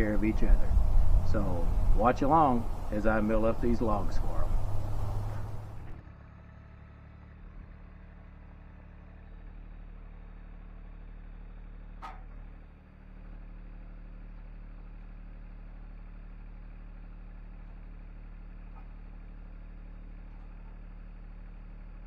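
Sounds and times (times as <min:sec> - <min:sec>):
engine humming: 0:00.0 - 0:10.5.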